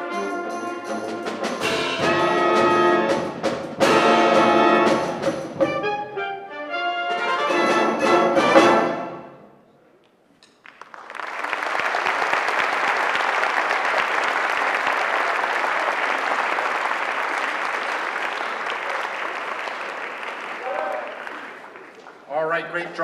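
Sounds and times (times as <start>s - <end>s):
brass and woodwind chord: 0.0s - 9.5s
audience applause: 10.6s - 22.3s.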